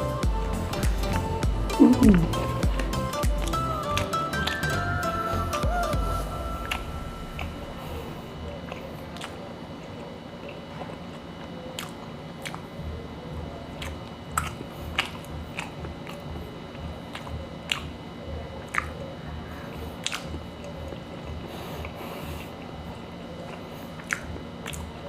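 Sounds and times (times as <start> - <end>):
chewing: 6.7 - 25.0
wet mouth clicks and smacks: 8.7 - 12.8, 13.6 - 18.0, 18.6 - 19.2, 19.9 - 25.0.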